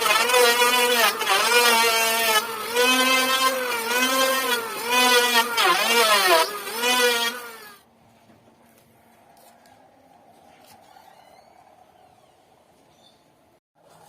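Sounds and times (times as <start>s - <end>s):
power tool cutting wood: 0.0s - 7.9s.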